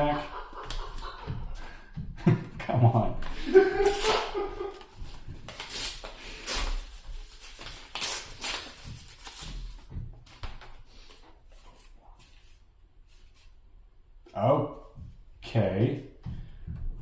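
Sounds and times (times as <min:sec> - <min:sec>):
trading cards rustling: 0:03.8 - 0:13.5.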